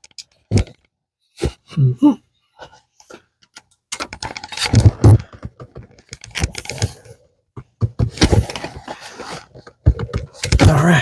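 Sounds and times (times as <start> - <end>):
wood clicking and knocking: 3.4 - 7.0, 7.6 - 11.0.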